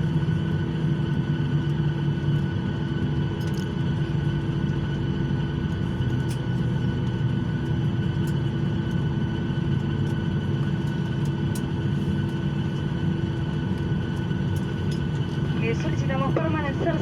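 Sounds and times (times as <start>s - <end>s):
airliner cabin rumble: 0.0s - 17.0s
jet engines whining: 8.0s - 17.0s.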